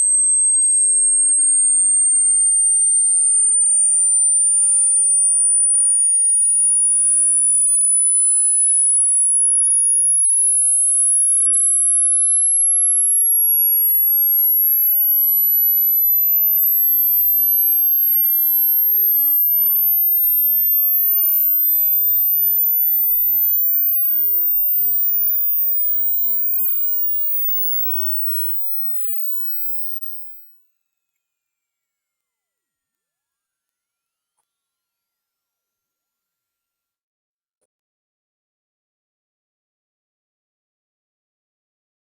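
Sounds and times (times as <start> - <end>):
high sine tone sweep: 0.0 - 30.6.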